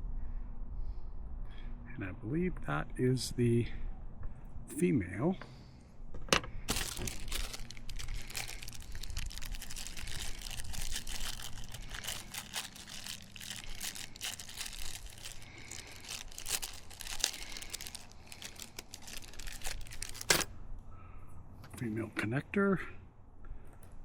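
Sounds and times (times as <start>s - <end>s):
plastic parts crinkling and clicking: 6.3s - 20.5s.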